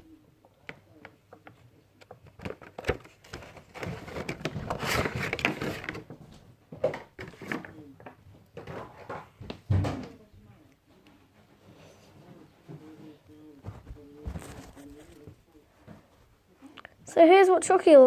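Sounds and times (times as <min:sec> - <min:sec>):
packaging rustling: 0:02.2 - 0:06.1.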